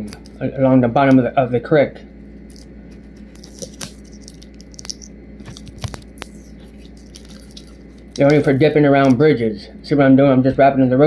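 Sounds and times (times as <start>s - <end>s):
steady low hum: 0.0s - 11.0s
tape clicks and crinkles: 2.4s - 9.4s.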